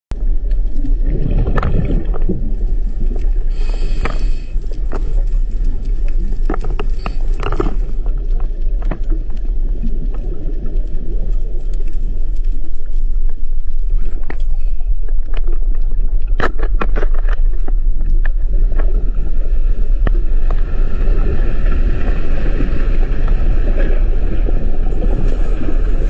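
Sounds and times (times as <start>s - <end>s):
deep underwater rumble: 0.1s - 26.0s
sharp cracks and knocks: 15.2s - 19.0s.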